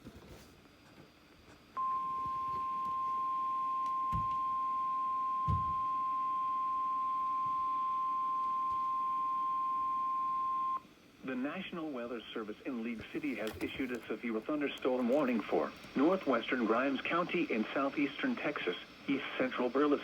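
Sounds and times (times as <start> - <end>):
steady warning alarm tone: 1.8 - 10.8.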